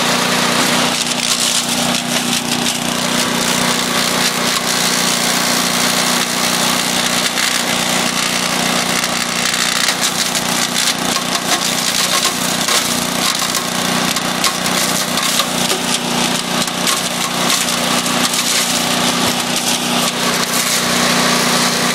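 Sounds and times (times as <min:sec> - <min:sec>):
wood chipper engine running: 0:00.0 - 0:21.9
wood crackling and snapping: 0:00.9 - 0:03.6, 0:09.0 - 0:20.7.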